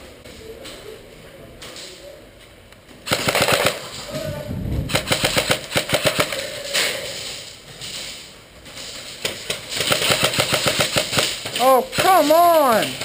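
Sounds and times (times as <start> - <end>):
airsoft guns firing: 3.0 - 6.6, 9.4 - 13.0.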